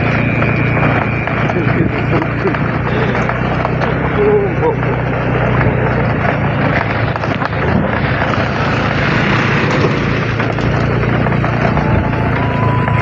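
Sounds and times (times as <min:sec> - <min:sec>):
vehicle engine droning: 0:00.0 - 0:13.0
rushing wind noise: 0:05.7 - 0:13.0.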